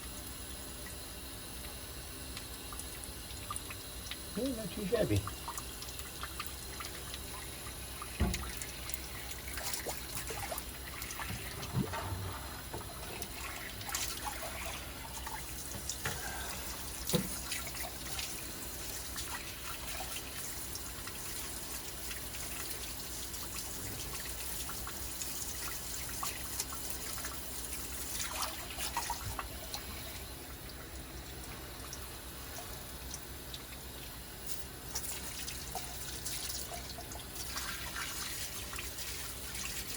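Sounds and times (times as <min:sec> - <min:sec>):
tap water trickling into sink: 0:01.6 - 0:16.4, 0:17.0 - 0:27.5.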